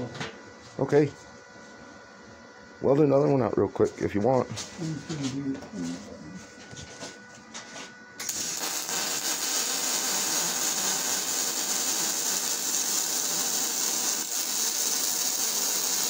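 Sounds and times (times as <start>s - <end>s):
welding arc hissing crackle: 8.2s - 16.0s.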